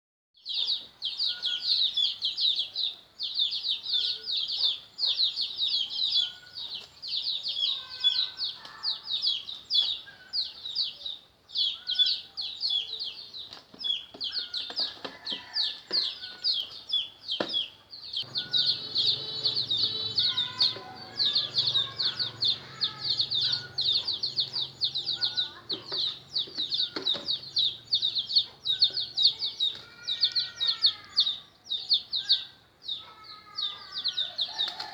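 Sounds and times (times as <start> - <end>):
chicks peeping: 0.5 - 34.9
lower calls: 18.1 - 32.6.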